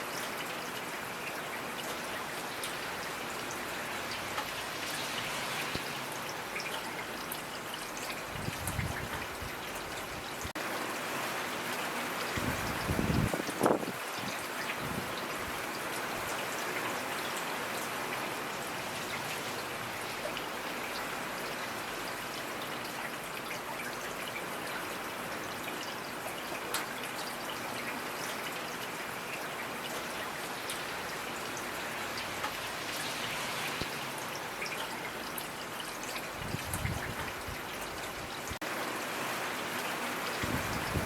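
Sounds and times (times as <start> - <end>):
steady rainfall: 0.0 - 41.0
individual raindrop ticks: 32.2 - 32.7.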